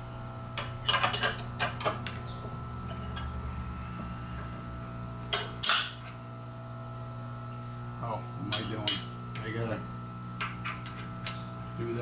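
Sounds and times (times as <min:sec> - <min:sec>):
low machine hum: 0:00.0 - 0:12.0.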